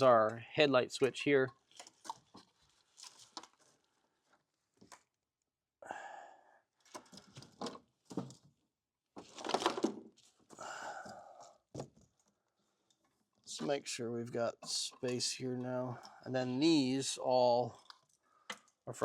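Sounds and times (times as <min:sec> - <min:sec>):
wires rustling and scraping: 0:01.3 - 0:05.1, 0:11.4 - 0:18.8.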